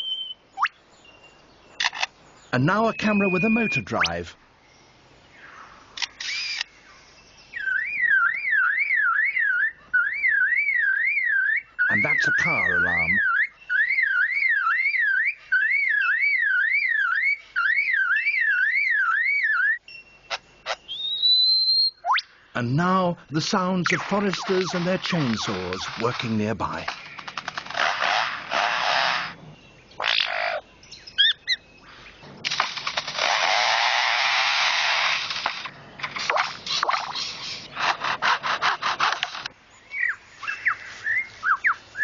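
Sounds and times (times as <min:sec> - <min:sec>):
bird mimicking car alarm: 0:00.0 - 0:00.8, 0:01.8 - 0:04.3, 0:07.4 - 0:31.8
bird mimicking chainsaw rasping: 0:06.0 - 0:06.7, 0:23.5 - 0:29.4, 0:33.0 - 0:39.5.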